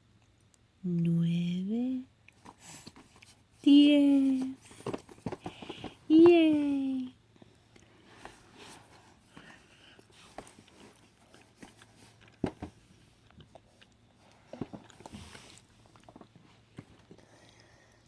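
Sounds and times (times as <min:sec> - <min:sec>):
chewing food up close: 0:10.2 - 0:18.0.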